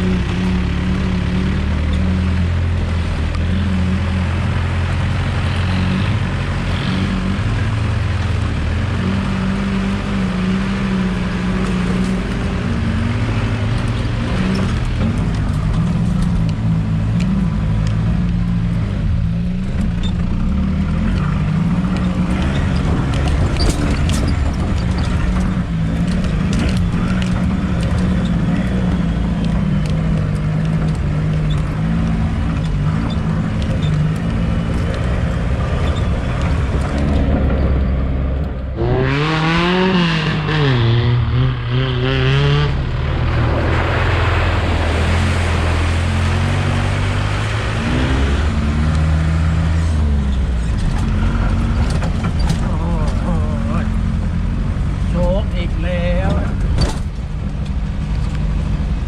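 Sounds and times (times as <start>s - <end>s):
car engine running: 0.0s - 59.0s
knocks and rattles: 19.6s - 38.9s, 50.2s - 54.1s.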